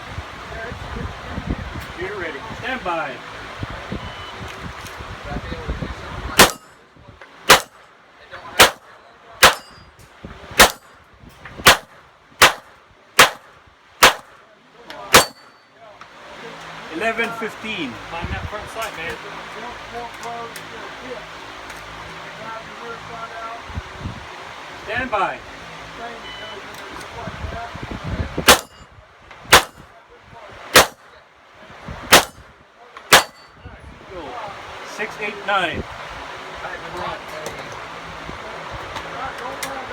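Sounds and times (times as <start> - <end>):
pistol shots: 6.4 - 6.7, 7.5 - 7.8, 8.6 - 9.8, 10.6 - 10.9, 11.6 - 14.4, 15.1 - 15.6, 28.5 - 28.8, 29.5 - 29.9, 30.7 - 31.1, 32.1 - 32.5, 33.1 - 33.5.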